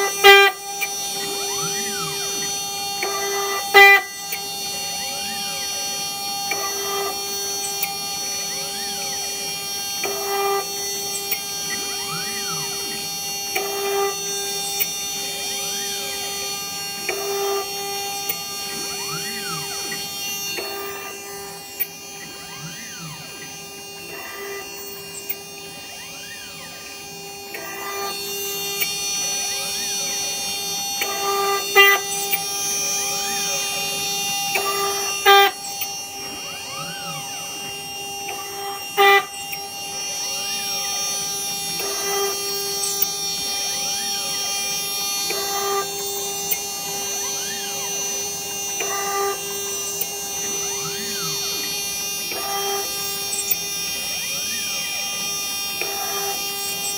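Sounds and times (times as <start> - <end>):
spindle whining: 0.0 - 56.9
stepper motors whining: 0.0 - 56.9.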